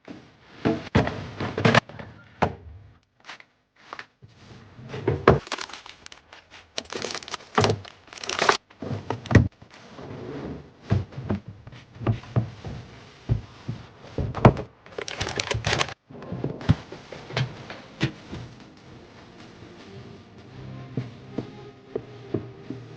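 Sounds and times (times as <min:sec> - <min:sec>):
plastic packaging crinkling: 0:05.4 - 0:08.7, 0:14.8 - 0:16.0.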